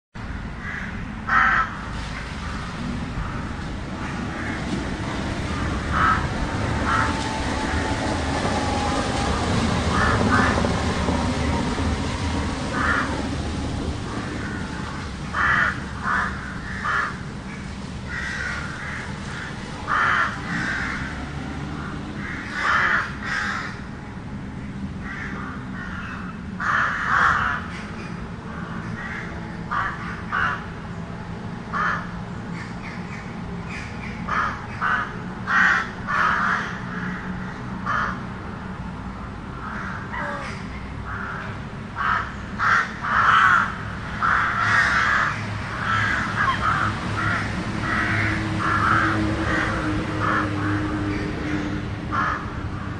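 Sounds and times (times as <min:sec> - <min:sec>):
distant traffic hum: 0:00.2 - 0:52.9
crows cawing: 0:00.6 - 0:01.8, 0:05.6 - 0:10.8, 0:12.7 - 0:13.2, 0:14.1 - 0:17.3, 0:18.1 - 0:21.2, 0:22.2 - 0:23.8, 0:25.0 - 0:30.7, 0:31.7 - 0:32.1, 0:34.3 - 0:38.3, 0:39.6 - 0:52.5.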